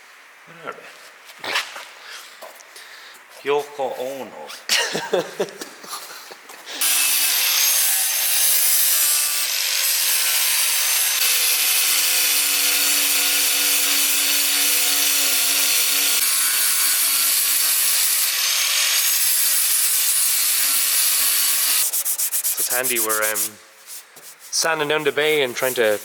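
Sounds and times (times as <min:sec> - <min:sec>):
power sander on sheet metal: 0:06.8 - 0:23.5.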